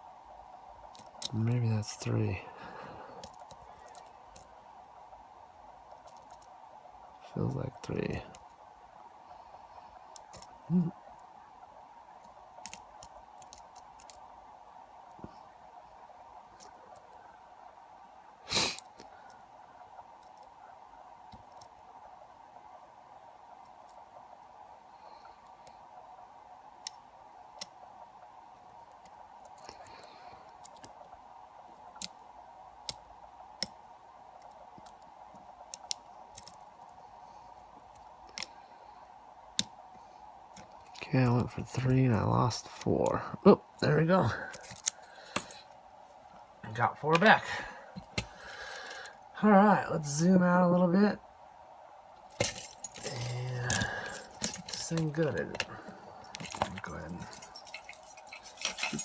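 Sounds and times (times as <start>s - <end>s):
faint steady hum: 0.0s - 59.0s
lock pick clicking on pins: 44.5s - 45.6s.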